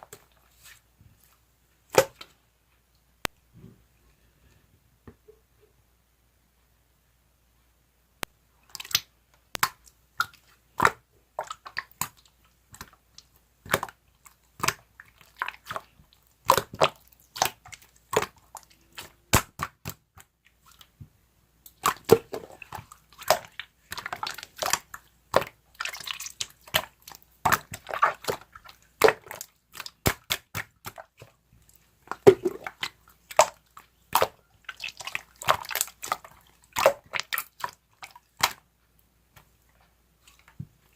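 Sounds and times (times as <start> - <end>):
slime squelching by hand: 0.0 - 2.4, 8.6 - 40.9.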